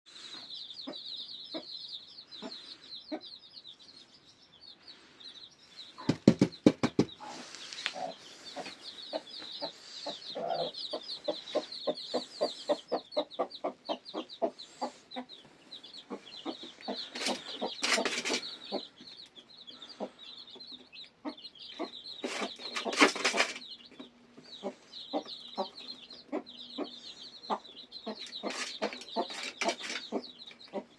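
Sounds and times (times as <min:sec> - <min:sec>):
chicks peeping: 0:00.1 - 0:30.9
hen clucking: 0:00.2 - 0:03.4, 0:06.0 - 0:30.9.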